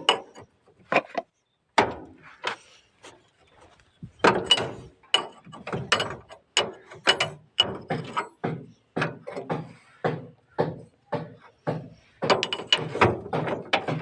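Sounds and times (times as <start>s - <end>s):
sharp clanking knocks on metal: 1.8s - 2.1s, 4.2s - 14.0s.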